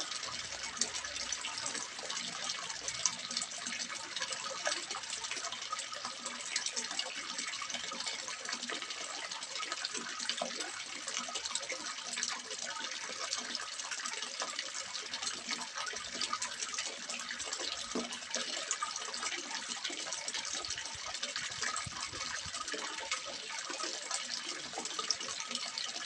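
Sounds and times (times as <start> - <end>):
water splashing into pond: 0.0 - 26.0.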